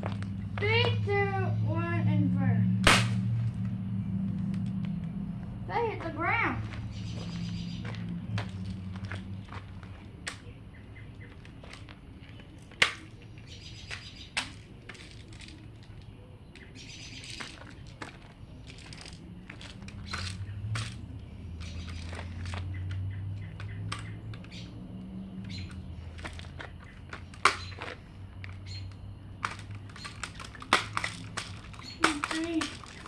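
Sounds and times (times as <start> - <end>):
steady low hum: 0.0 - 32.0
handling clicks and knocks: 7.8 - 33.0.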